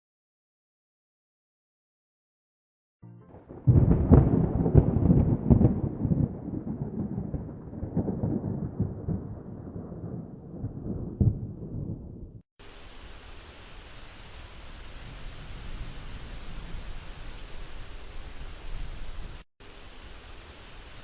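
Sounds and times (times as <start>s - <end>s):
thunder clap and rumble: 3.3s - 12.4s.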